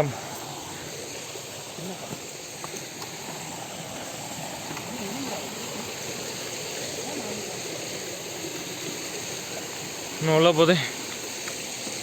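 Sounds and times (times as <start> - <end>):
stream flowing over rocks: 0.0 - 12.0
faint voices: 1.7 - 2.3, 4.0 - 8.3.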